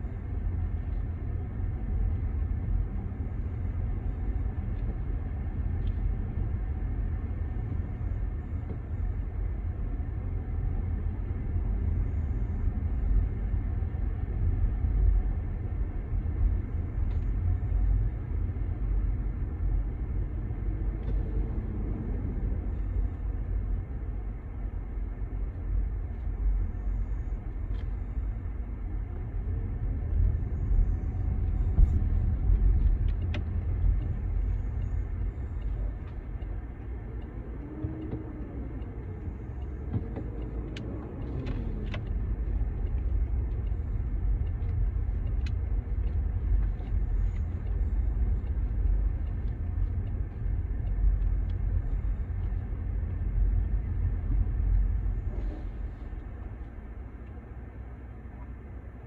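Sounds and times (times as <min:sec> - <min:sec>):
car road and engine rumble: 0:00.0 - 0:59.0
faint clicks: 0:32.5 - 0:57.5.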